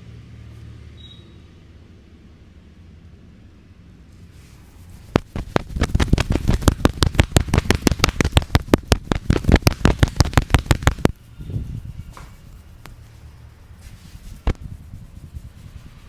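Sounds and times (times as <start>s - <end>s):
hands slapping in massage: 4.9s - 11.2s, 12.1s - 13.0s, 13.8s - 14.8s.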